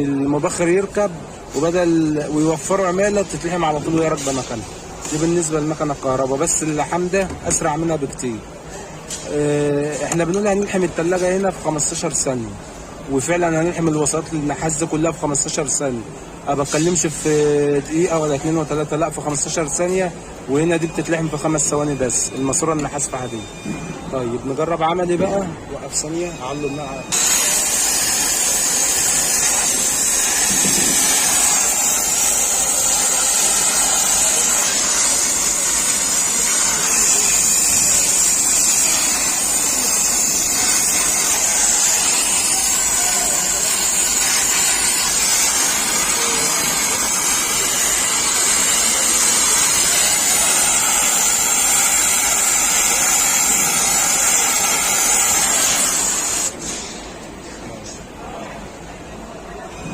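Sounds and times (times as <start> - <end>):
torch flame hissing: 27.2 - 56.8.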